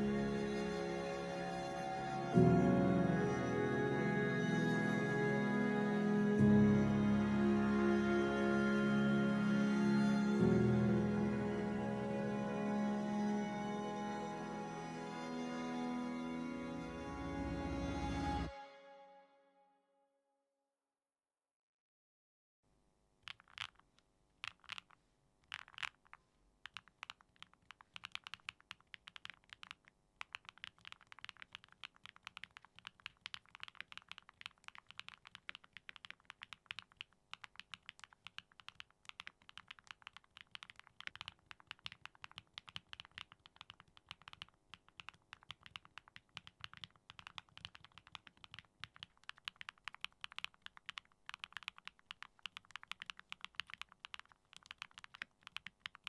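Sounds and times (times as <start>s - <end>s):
mechanical keyboard typing: 23.2s - 23.8s, 24.4s - 56.0s.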